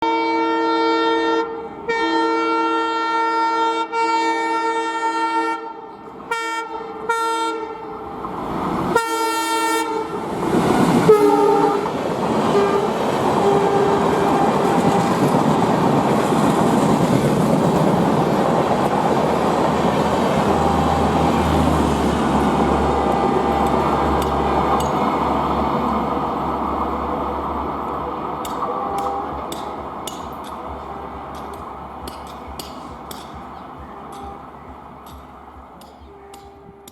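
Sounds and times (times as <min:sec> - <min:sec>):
locomotive horn blasts: 0:00.0 - 0:08.2, 0:08.9 - 0:10.2, 0:11.0 - 0:15.3, 0:28.5 - 0:29.8, 0:36.0 - 0:36.9
train passing rumble: 0:00.0 - 0:36.9
wheels clacking over rail joints: 0:10.3 - 0:36.9.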